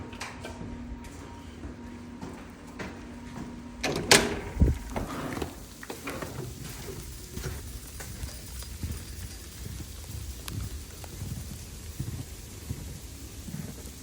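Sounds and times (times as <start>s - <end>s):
door clunking: 3.8s - 7.0s
footsteps crunching on snow: 4.6s - 14.0s.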